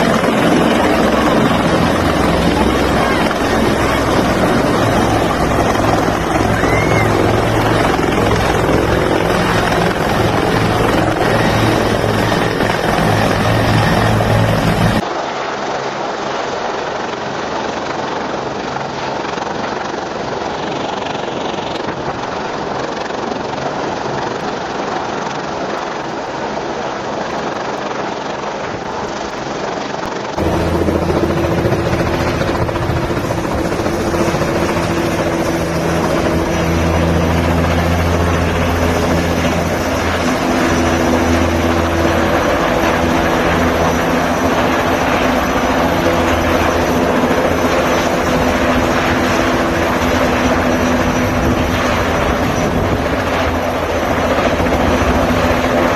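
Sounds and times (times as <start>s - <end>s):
helicopter drone: 0.0s - 55.9s.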